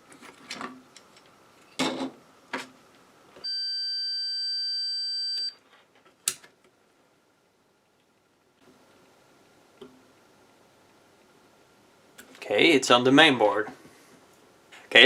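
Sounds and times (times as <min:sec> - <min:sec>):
multimeter continuity beep: 0:03.4 - 0:05.6.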